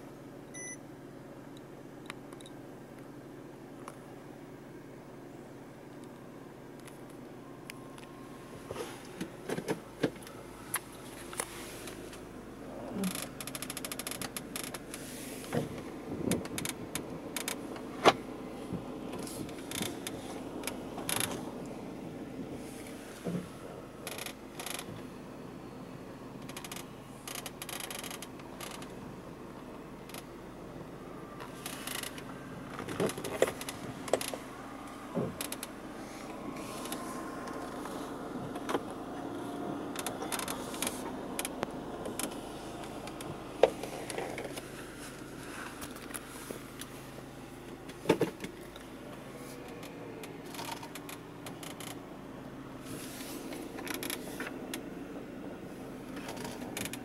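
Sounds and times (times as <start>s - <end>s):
car cabin hum: 0.0s - 57.0s
dashboard creaks and clicks: 12.9s - 21.6s, 22.7s - 25.0s, 26.4s - 29.0s, 29.6s - 30.3s, 31.4s - 47.0s, 47.7s - 52.0s, 53.0s - 54.9s, 56.1s - 57.0s.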